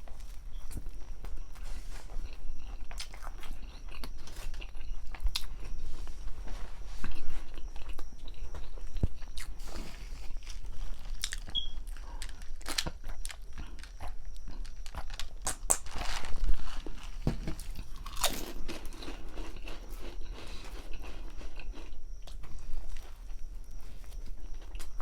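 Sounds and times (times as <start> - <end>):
wet chewing: 0.6 - 5.8, 7.0 - 25.0
crunching bites into bread: 7.6 - 22.4.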